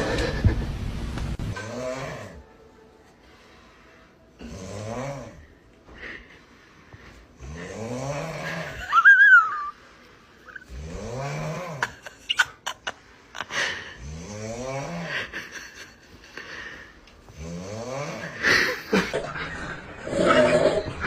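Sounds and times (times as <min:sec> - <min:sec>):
person snoring: 0:01.5 - 0:02.4, 0:04.4 - 0:05.5, 0:07.4 - 0:08.8, 0:10.6 - 0:12.0, 0:13.6 - 0:15.3, 0:17.3 - 0:21.0.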